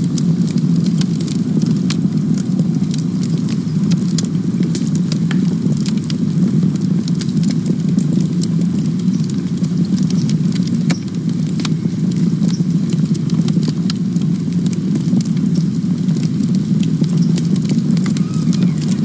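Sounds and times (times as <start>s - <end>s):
campfire roaring: 0.0s - 19.0s
wood crackling and popping: 0.0s - 19.0s.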